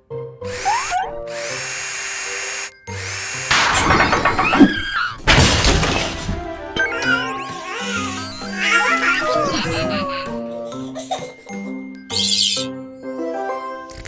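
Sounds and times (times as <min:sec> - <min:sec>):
cartoon power tool drilling: 0:00.4 - 0:11.5
cheerful background music: 0:06.1 - 0:14.0.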